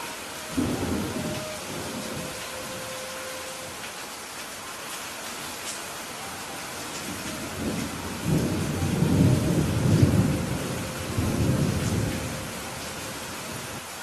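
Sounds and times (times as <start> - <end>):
thunder rumbling: 0.0 - 3.8, 6.7 - 13.9
steady rain: 0.0 - 14.0.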